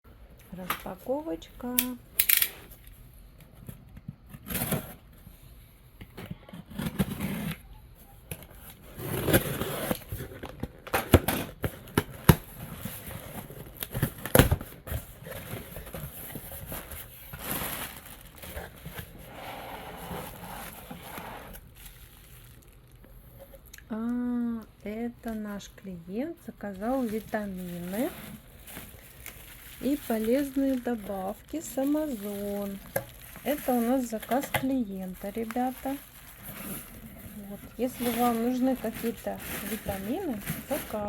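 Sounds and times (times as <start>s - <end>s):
packaging rustling and tearing: 8.5s - 23.7s, 26.8s - 41.0s.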